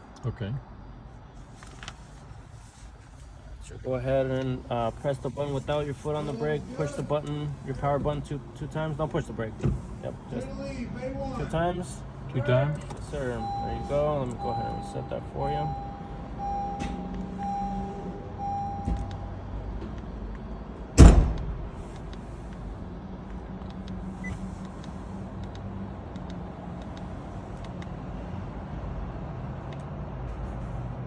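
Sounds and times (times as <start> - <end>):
steady low hum: 0.6 - 28.2
car door slamming: 9.5 - 10.1, 15.8 - 17.9, 18.5 - 19.2, 21.0 - 22.3
car dashboard chime beeping: 13.0 - 19.4.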